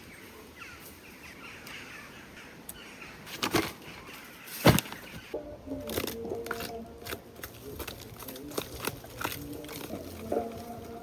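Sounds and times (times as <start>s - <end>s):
background music tones: 5.4s - 11.0s.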